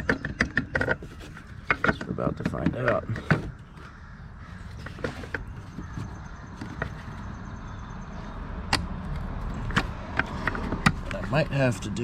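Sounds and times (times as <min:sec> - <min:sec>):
clicks and knocks on engine parts: 0:00.0 - 0:04.0, 0:04.6 - 0:07.4, 0:08.7 - 0:12.0.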